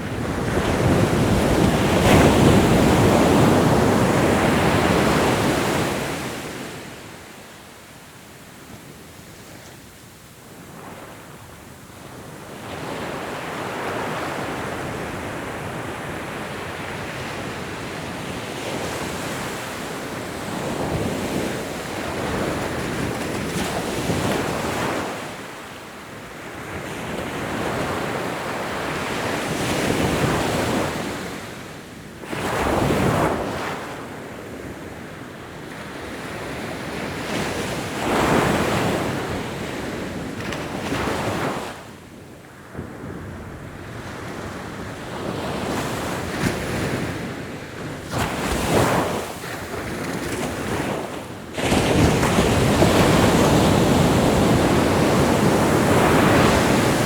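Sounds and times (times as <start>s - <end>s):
wind on microphone: 0.0s - 7.2s, 42.7s - 57.0s
ocean waves breaking on shore: 0.0s - 8.0s, 42.6s - 57.0s.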